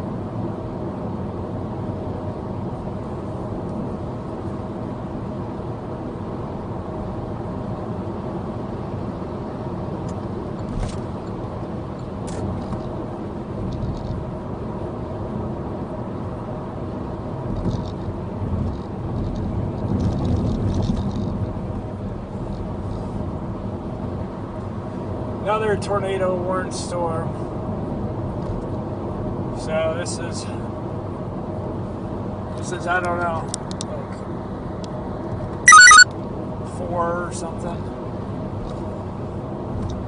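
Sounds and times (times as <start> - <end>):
car engine hum: 0.0 - 29.6
road noise: 0.0 - 40.0.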